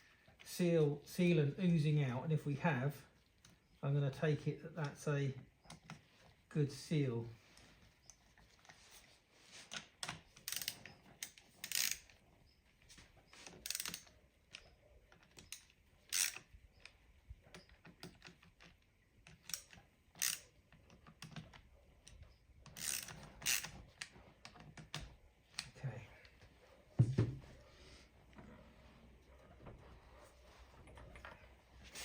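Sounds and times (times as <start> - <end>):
metallic clicks of nuts and tools: 9.7 - 12.2, 13.3 - 26.4.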